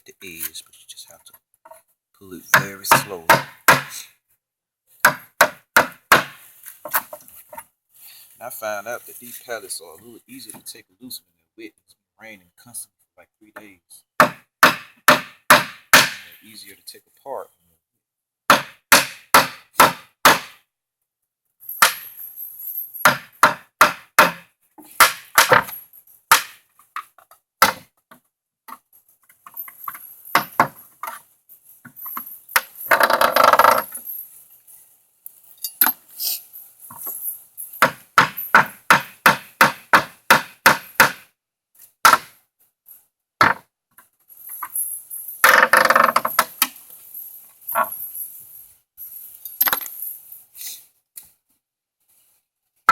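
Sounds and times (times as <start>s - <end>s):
rubber mallet striking crowbar: 14.2s - 16.3s, 18.5s - 20.6s
wood grating: 29.2s - 34.4s, 45.4s - 48.3s.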